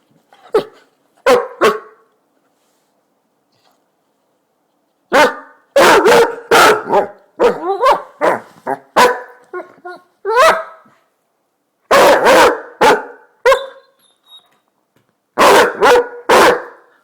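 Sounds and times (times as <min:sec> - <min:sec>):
dog barking and baying: 0:00.5 - 0:02.0, 0:05.1 - 0:10.9, 0:11.9 - 0:14.0, 0:15.4 - 0:16.9.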